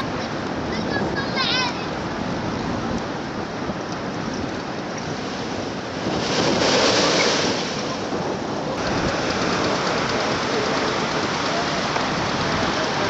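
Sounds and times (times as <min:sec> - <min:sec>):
surf washing: 0:00.0 - 0:13.0
wave crashing: 0:04.8 - 0:13.0.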